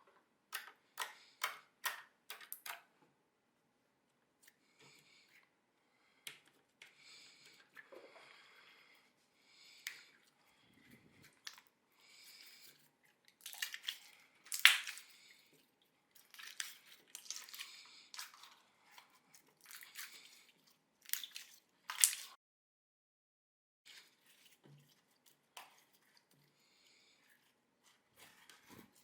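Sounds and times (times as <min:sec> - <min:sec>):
slime squishing and crackling: 0:13.3 - 0:15.2, 0:16.1 - 0:22.4.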